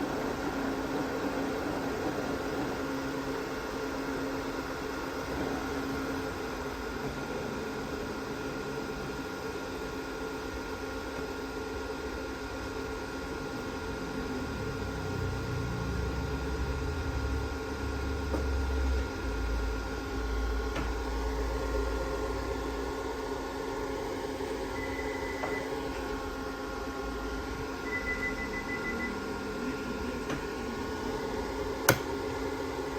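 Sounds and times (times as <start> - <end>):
inverter electrical whine and hum: 0.0 - 32.9
short high beeps: 27.8 - 29.2.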